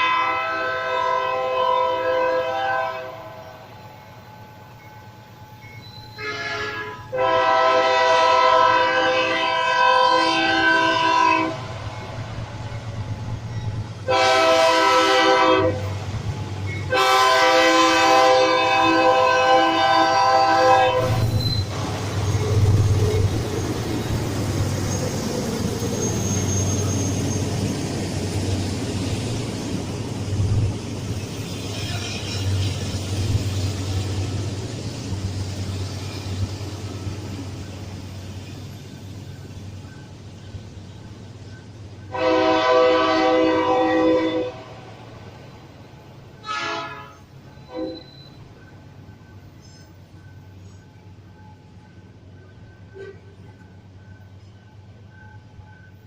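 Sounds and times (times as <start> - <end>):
locomotive horn blasts: 0.0 - 3.5, 6.2 - 11.6, 14.0 - 16.0, 16.9 - 21.3, 42.1 - 44.9, 46.4 - 48.1
low rumble of train passing: 0.0 - 56.0.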